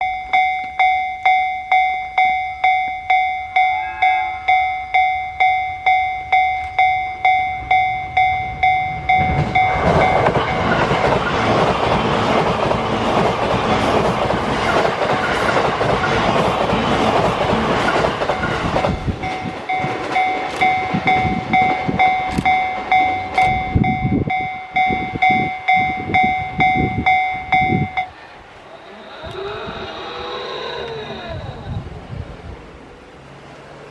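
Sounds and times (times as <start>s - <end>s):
level crossing electronic bell: 0.0s - 10.3s
train rushing past: 3.2s - 33.9s
wheels clattering over rail joints: 7.6s - 23.6s.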